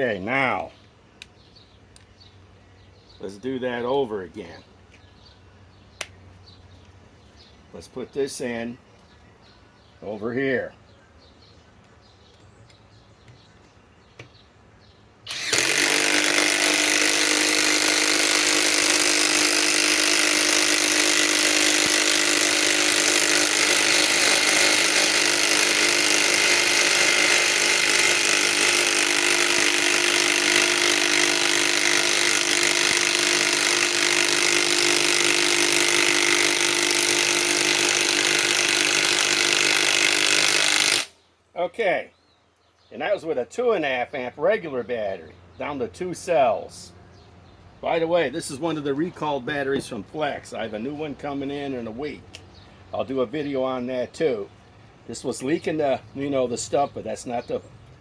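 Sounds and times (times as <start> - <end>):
impact wrench hammering: 15.3 - 41.1.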